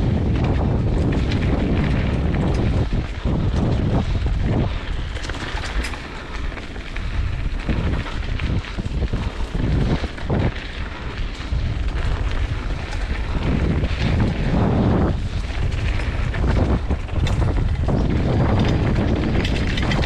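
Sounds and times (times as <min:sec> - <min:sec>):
bike rattling and knocking: 0:00.0 - 0:20.0
tyres rumbling on dirt and rocks: 0:00.0 - 0:20.0
wind buffeting microphone: 0:00.0 - 0:20.0.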